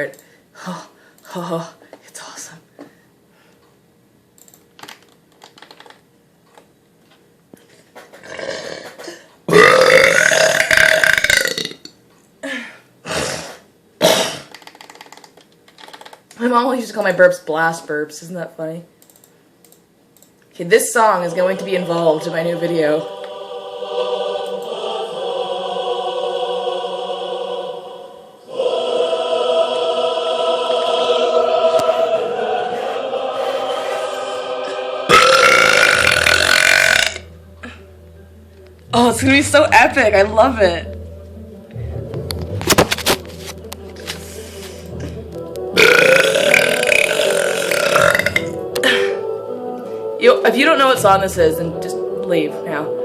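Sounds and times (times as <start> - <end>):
woman burping loudly: 8.2 - 11.9, 35.1 - 37.8, 45.8 - 49.1
choral music: 20.9 - 53.0
breathy sound: 37.0 - 38.5.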